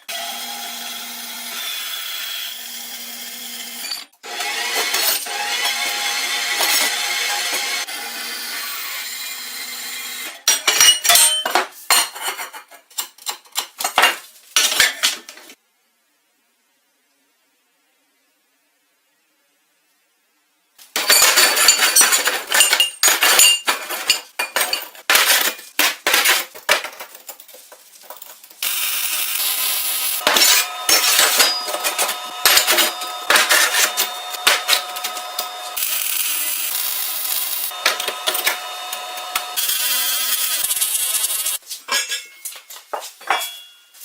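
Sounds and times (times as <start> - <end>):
metal parts clinking: 21.0 - 28.6, 30.2 - 35.5.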